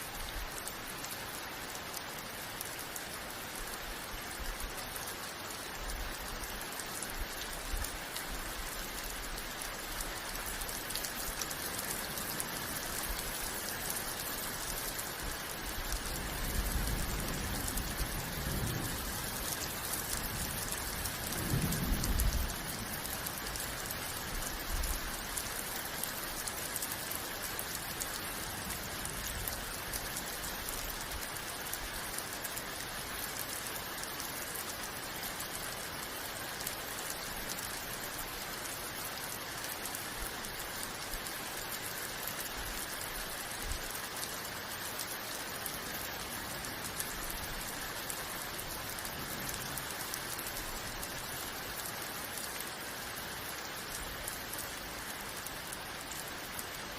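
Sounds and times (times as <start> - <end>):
steady rain falling: 0.0 - 56.9
low thunder rumble: 16.3 - 23.6.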